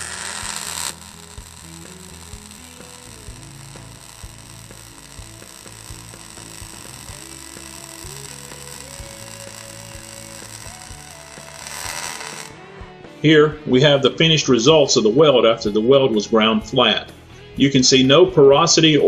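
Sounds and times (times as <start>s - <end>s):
steady high hiss: 0.0s - 12.6s
quiet background music: 0.0s - 19.0s.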